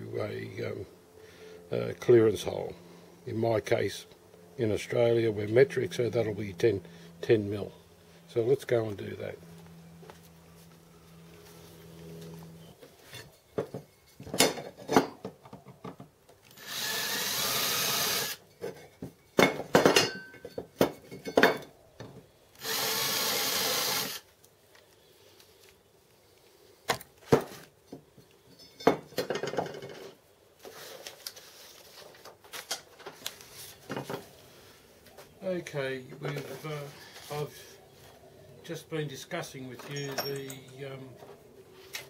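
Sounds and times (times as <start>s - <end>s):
tools knocking and clattering: 13.1s - 16.2s, 18.5s - 22.2s, 27.3s - 30.2s, 39.8s - 40.8s
noisy machine bursts: 16.6s - 18.4s, 22.6s - 24.2s.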